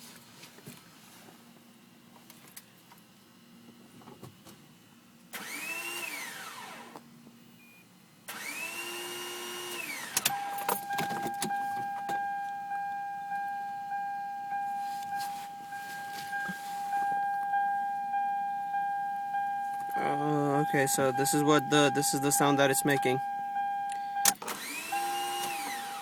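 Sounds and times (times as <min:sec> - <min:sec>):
car starter motor whirring: 0:05.3 - 0:07.0, 0:08.2 - 0:26.0
dashboard warning chime: 0:10.2 - 0:26.0.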